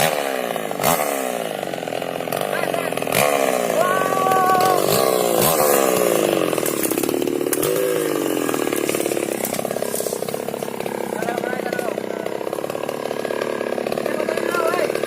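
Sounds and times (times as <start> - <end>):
chainsaw revving: 0.0 - 15.0.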